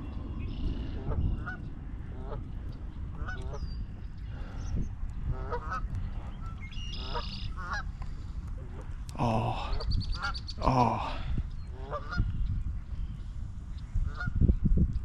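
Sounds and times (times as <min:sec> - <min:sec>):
low rumble: 0:00.0 - 0:15.0
geese honking: 0:03.1 - 0:03.6, 0:05.3 - 0:08.0, 0:11.7 - 0:12.3, 0:14.1 - 0:14.4.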